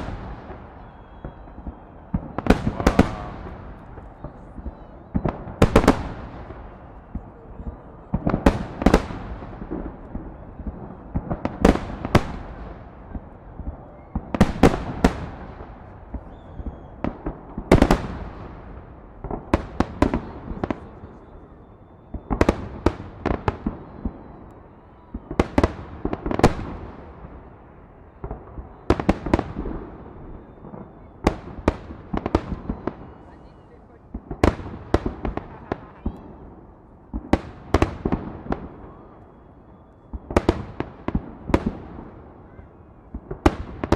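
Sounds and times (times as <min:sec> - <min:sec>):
fireworks bangs: 0:00.0 - 0:43.9
rolling echo: 0:00.0 - 0:43.9.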